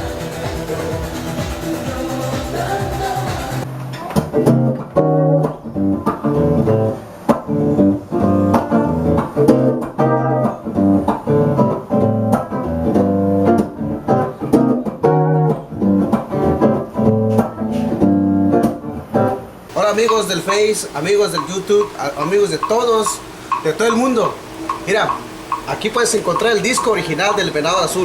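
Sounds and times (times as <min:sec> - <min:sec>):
other music: 0:00.0 - 0:03.7
guitar melody over bass notes: 0:04.4 - 0:19.0.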